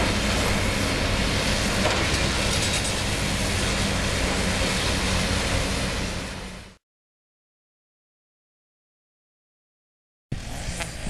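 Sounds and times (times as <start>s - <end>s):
machinery rattling: 0.0s - 6.3s
excavator diesel engine hum: 0.0s - 6.8s, 10.3s - 11.0s.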